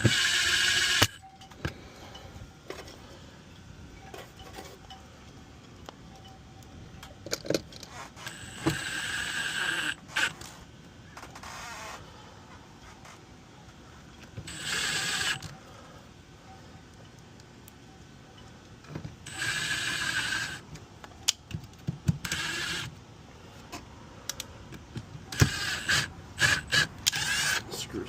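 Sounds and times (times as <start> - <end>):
power drill driving screws: 0.0 - 1.2, 8.0 - 10.5, 14.5 - 15.5, 19.3 - 20.6, 22.2 - 22.9, 25.3 - 27.6.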